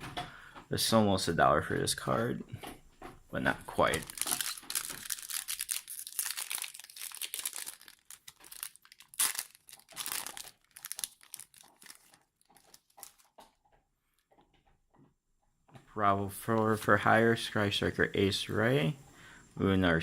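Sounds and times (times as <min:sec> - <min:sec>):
foil wrapper tearing and crinkling: 0:03.9 - 0:13.4.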